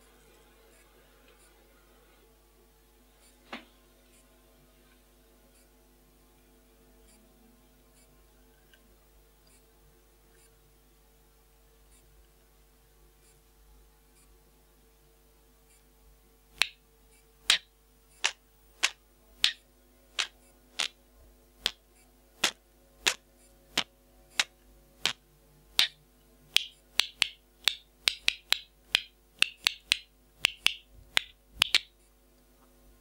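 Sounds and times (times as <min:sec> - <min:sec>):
parrot clicking: 0:25.8 - 0:31.9.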